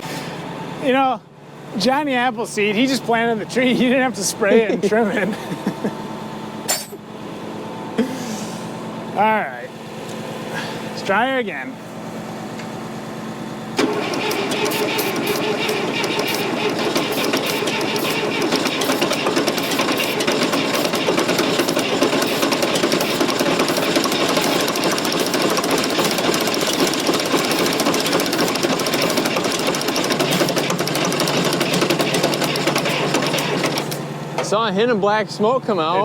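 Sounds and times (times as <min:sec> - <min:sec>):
diesel engine cranking on starter: 0:12.2 - 0:34.7.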